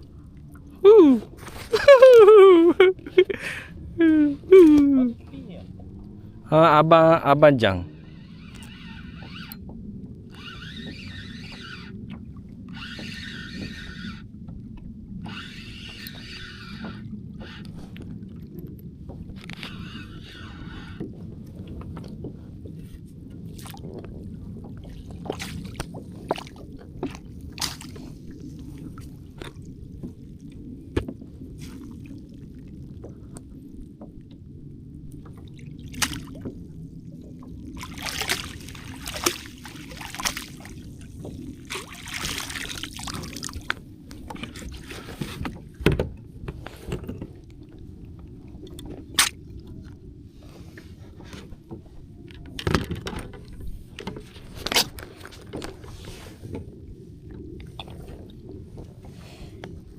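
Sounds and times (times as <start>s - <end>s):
water sloshing around kayak: 0.0s - 59.9s
low rumble: 2.4s - 8.6s.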